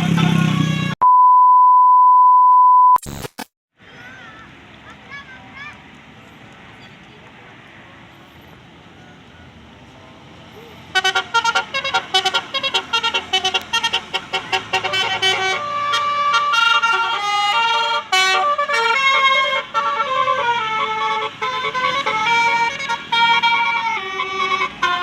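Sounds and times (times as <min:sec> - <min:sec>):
multi-tone air horn melody: 0:10.9 - 0:25.0.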